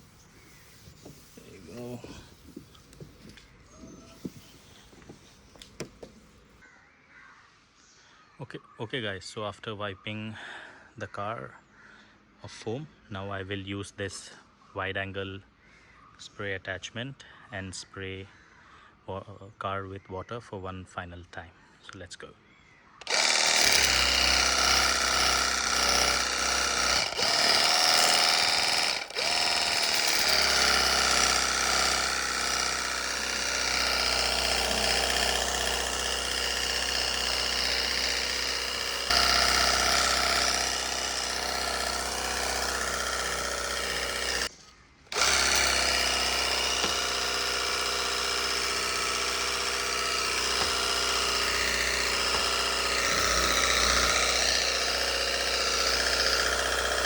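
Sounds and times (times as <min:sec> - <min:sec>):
water spraying from nozzle: 0:00.0 - 0:05.4
pressure washer pump whine: 0:00.0 - 0:06.6, 0:23.1 - 0:44.5, 0:45.1 - 0:57.0.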